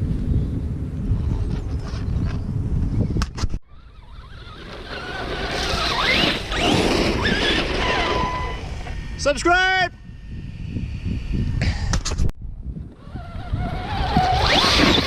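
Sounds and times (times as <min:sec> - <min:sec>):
toy truck electric motor whining: 0:03.7 - 0:09.2, 0:13.0 - 0:15.0.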